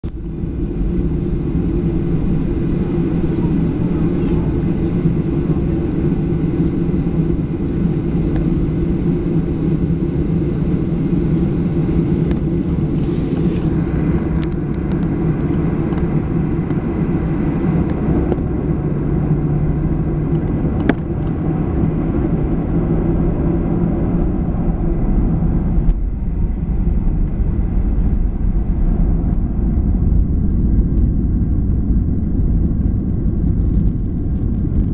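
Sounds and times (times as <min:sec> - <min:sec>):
jet engine hiss: 0:00.0 - 0:19.3
jet engines rumbling: 0:00.0 - 0:34.9.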